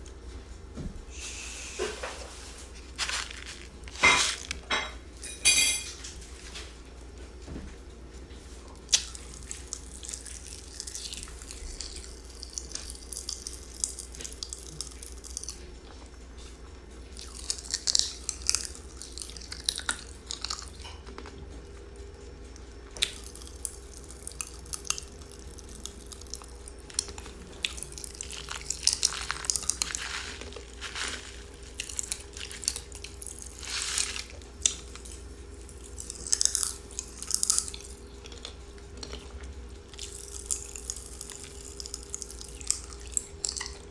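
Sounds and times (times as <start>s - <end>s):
steady low hum: 0.0s - 43.9s
popping candy crackling: 2.8s - 4.8s, 23.0s - 37.9s.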